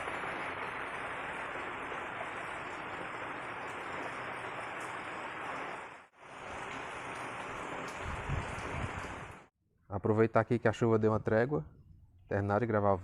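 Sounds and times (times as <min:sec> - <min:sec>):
heavy rain falling: 0:00.0 - 0:09.5.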